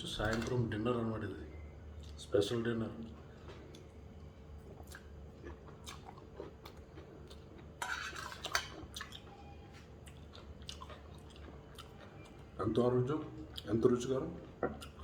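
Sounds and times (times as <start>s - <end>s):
person chewing: 4.6s - 12.5s, 14.4s - 15.0s.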